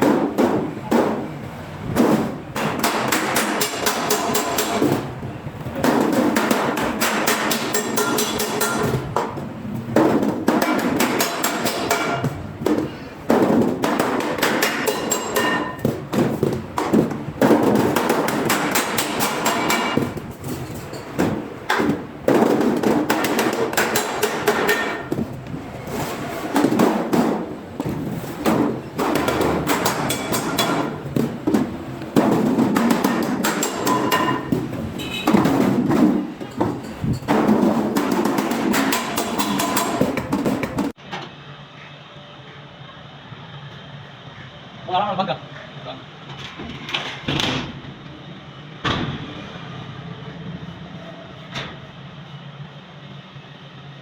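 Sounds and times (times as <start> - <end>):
hammers striking sheet steel: 0.0 - 41.0.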